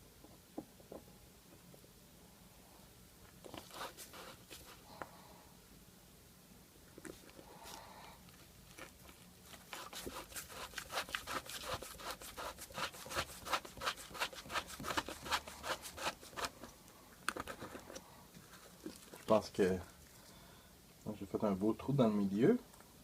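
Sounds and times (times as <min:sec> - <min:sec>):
hand tool scraping wood: 0:09.8 - 0:16.7.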